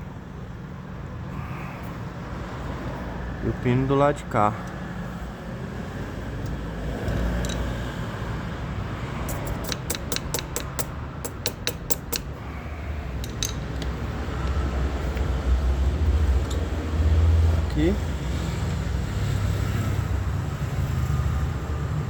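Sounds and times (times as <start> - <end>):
sharp metallic tool clicks: 9.3 - 12.3.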